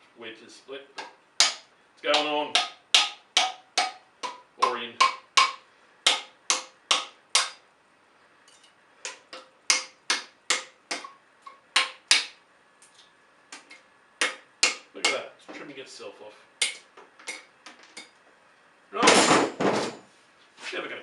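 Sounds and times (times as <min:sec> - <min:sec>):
hammer striking wooden wedge: 0:01.0 - 0:07.6, 0:09.1 - 0:12.4, 0:13.6 - 0:15.2.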